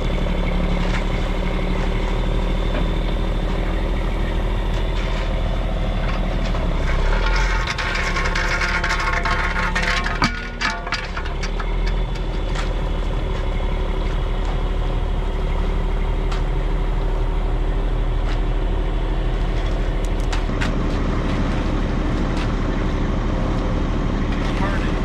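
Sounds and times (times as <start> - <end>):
large engine running steadily: 0.0 - 25.0
sharp knocks and clanks: 0.8 - 14.7.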